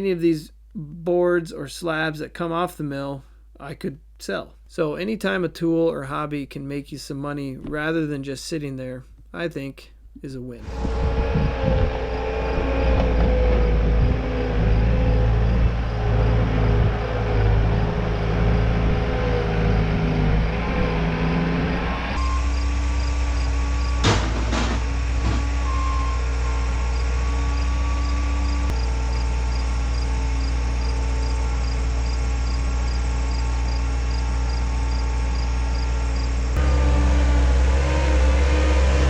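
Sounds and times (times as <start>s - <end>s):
vehicle engine running: 10.6s - 39.0s
sharp knocks and clatter: 23.9s - 25.6s.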